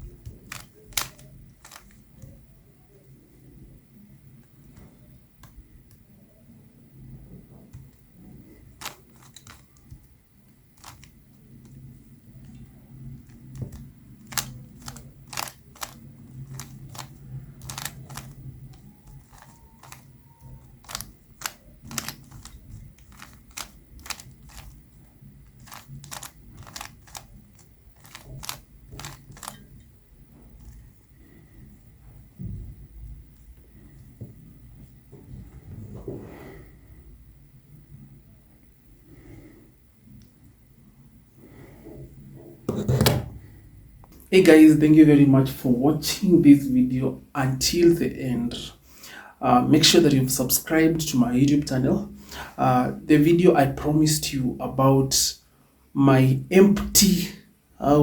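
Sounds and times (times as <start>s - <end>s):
puzzle cube clicking: 0.0s - 2.4s, 8.7s - 10.1s, 10.8s - 12.6s, 13.2s - 29.7s
steady low hum: 0.0s - 46.1s.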